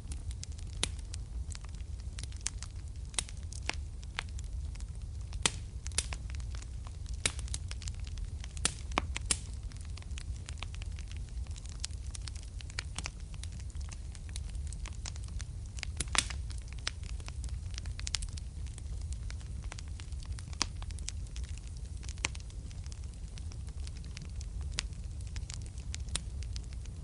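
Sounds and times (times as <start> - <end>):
fire crackling and popping: 0.0 - 27.0
low rumble of flames: 0.0 - 27.0.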